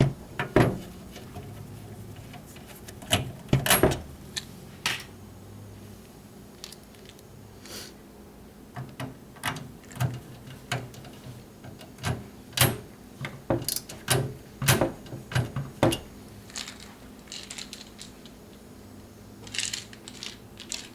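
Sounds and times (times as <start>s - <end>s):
clicks and knocks of hard parts: 0.0s - 5.1s, 8.8s - 16.2s.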